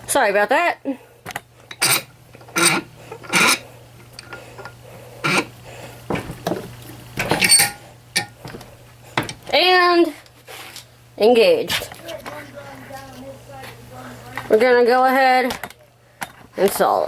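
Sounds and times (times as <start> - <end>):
metal tools clanking and scraping: 1.3 - 5.5, 7.2 - 8.6.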